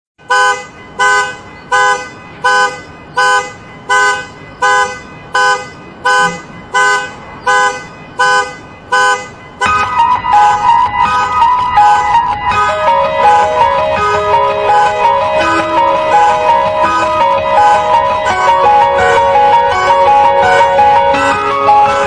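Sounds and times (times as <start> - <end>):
car alarm horn honks: 0.2 - 22.0
music with horn-like tones: 9.6 - 22.0.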